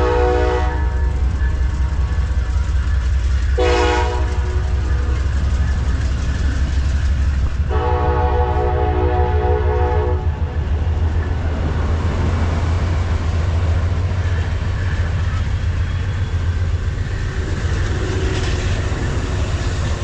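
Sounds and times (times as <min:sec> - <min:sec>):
locomotive horn chord: 0:00.0 - 0:01.3, 0:03.6 - 0:05.2, 0:07.7 - 0:10.6
train rumbling past: 0:00.0 - 0:20.0.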